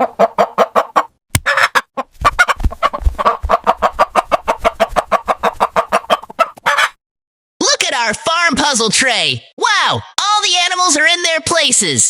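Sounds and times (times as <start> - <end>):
hen clucking: 0.0 - 7.0.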